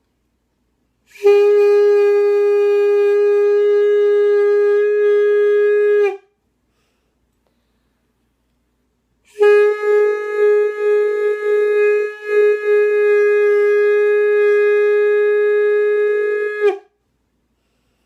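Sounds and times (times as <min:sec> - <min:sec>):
wind instrument long held note: 0:01.0 - 0:06.3, 0:09.2 - 0:16.9.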